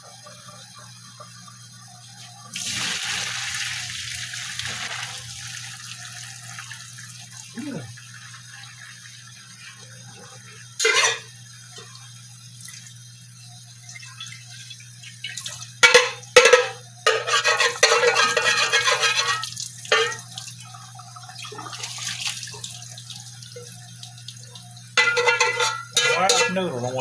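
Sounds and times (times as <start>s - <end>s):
water splashing into sink: 15.1s - 26.6s.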